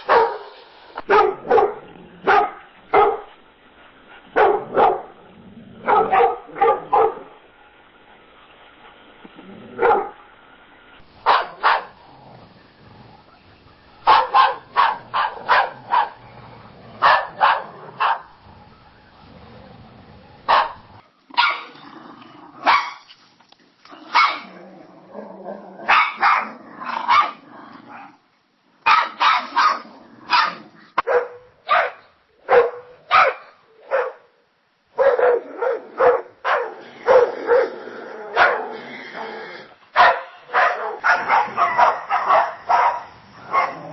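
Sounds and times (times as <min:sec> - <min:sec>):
dogs barking: 0:00.0 - 0:03.4, 0:04.3 - 0:05.2, 0:05.8 - 0:07.4, 0:09.8 - 0:10.2, 0:11.2 - 0:12.0, 0:14.0 - 0:16.2, 0:17.0 - 0:18.4, 0:20.4 - 0:21.8, 0:22.6 - 0:23.0, 0:24.1 - 0:24.5, 0:25.8 - 0:27.4, 0:28.8 - 0:34.3, 0:35.0 - 0:38.7, 0:40.0 - 0:43.9.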